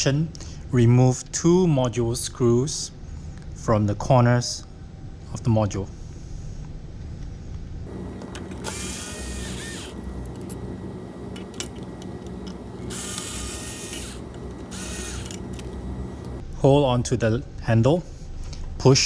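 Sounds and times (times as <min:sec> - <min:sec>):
power screwdriver whirring: 0:07.9 - 0:16.4
small clicks: 0:07.9 - 0:16.4.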